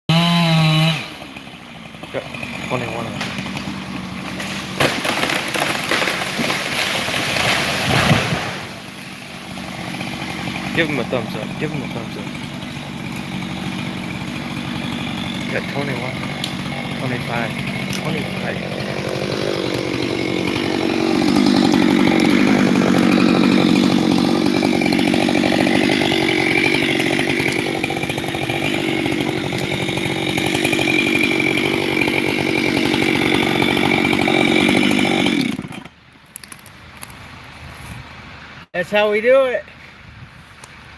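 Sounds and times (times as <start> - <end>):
chainsaw idling: 0.1 - 35.9
tree crashing through branches: 3.0 - 11.1, 12.3 - 35.8
heavy thud of tree landing: 4.3 - 8.8.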